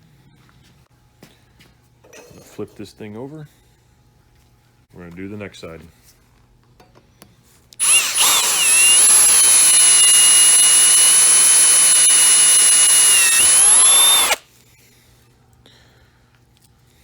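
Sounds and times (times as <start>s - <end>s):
electric drill whining: 7.8s - 14.4s.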